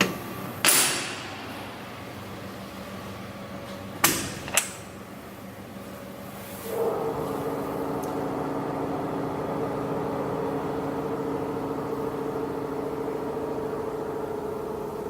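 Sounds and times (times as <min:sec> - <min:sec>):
diesel generator drone: 0:05.1 - 0:15.0.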